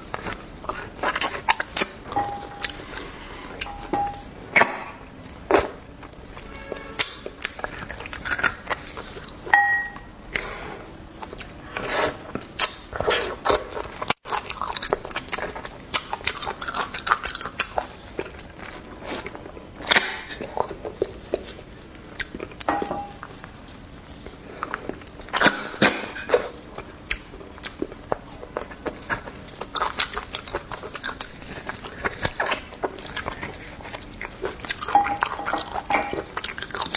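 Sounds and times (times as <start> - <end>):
chewing: 0.0 - 4.3, 5.2 - 36.9.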